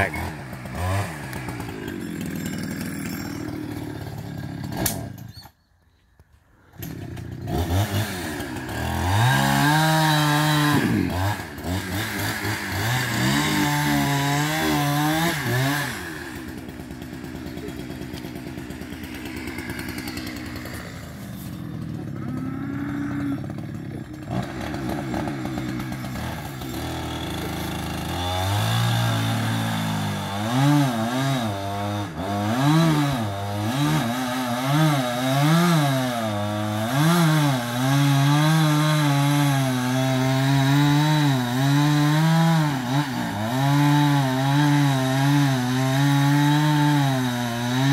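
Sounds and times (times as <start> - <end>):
chainsaw engine revving: 0.0 - 5.3, 6.7 - 47.9.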